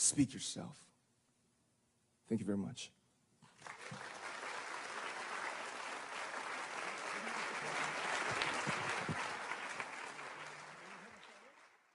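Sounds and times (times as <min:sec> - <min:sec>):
audience applauding: 0:03.5 - 0:11.9.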